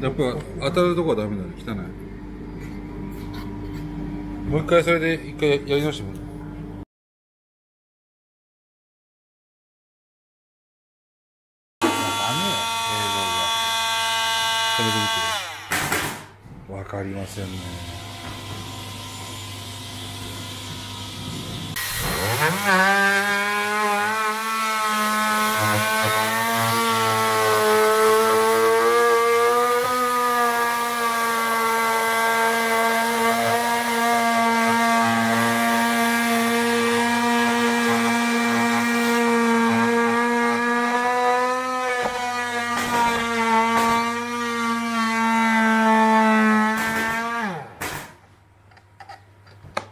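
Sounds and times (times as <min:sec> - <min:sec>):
oscillating multi-tool cutting wood: 0:11.8 - 0:16.3, 0:17.4 - 0:47.8.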